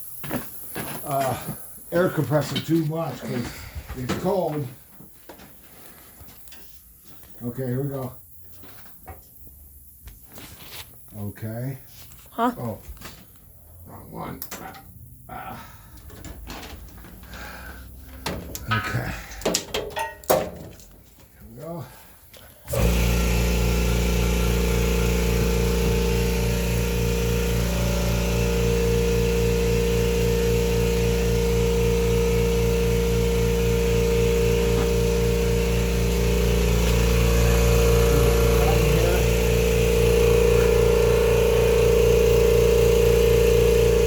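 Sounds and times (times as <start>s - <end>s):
air compressor running: 22.6s - 44.0s.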